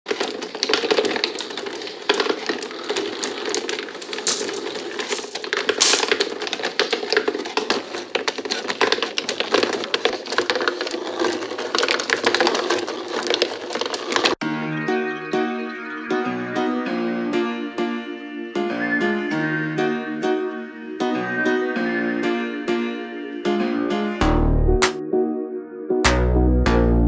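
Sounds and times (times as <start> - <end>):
marbles rattling and clicking: 0.1 - 7.8.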